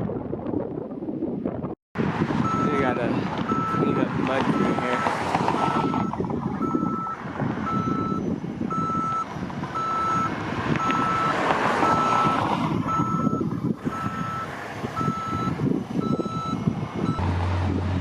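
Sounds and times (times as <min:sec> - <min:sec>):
reversing alarm beeping: 0:02.4 - 0:17.3.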